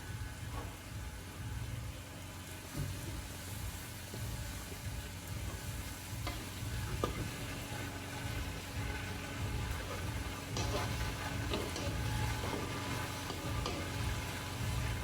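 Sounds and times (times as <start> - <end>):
sauce sizzling in a pot: 0.0 - 15.0
spoon stirring a pot: 8.9 - 15.0.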